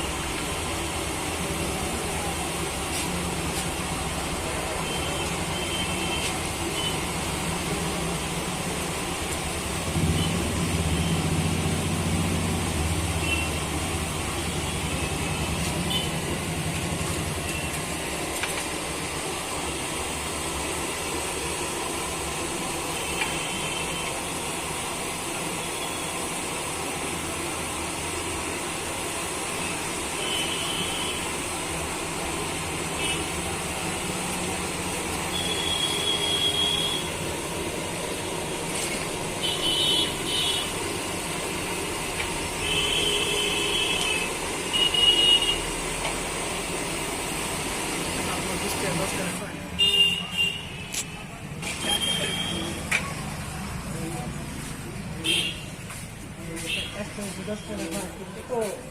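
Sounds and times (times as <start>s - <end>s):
street traffic: 0.0s - 58.9s
vehicle horn beeps: 4.8s - 7.1s, 10.0s - 11.3s, 13.1s - 13.7s, 14.4s - 16.2s, 23.0s - 24.2s, 30.2s - 31.3s, 33.0s - 33.3s, 35.2s - 37.2s, 39.4s - 40.8s, 42.6s - 45.7s, 49.8s - 52.9s, 55.2s - 55.7s.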